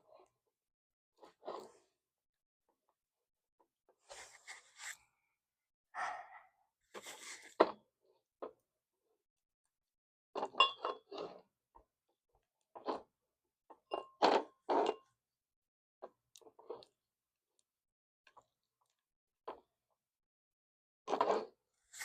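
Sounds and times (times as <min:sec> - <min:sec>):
slime squelching and scraping: 0:04.1 - 0:05.1.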